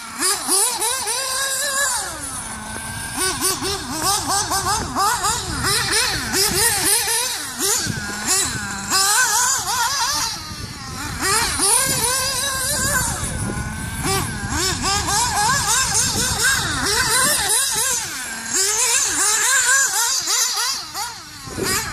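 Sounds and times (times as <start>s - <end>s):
rc car engine revving: 0.0s - 21.9s.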